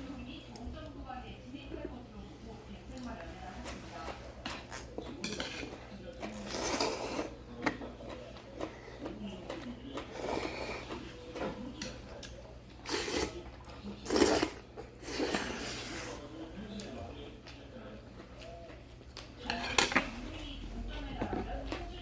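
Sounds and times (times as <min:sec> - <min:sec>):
low electrical hum: 0:00.0 - 0:22.0
slurping and chewing: 0:04.5 - 0:11.2, 0:11.8 - 0:16.2.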